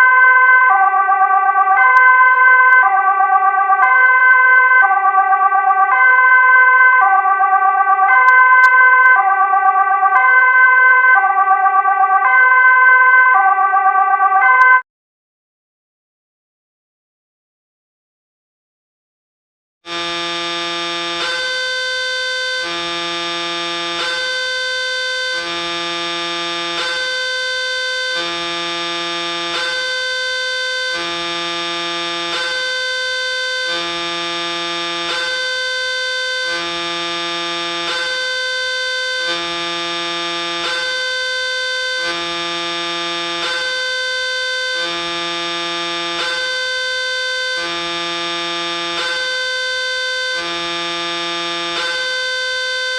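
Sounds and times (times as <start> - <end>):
two-tone electronic crossing alarm: 0.0 - 14.8, 19.9 - 52.9.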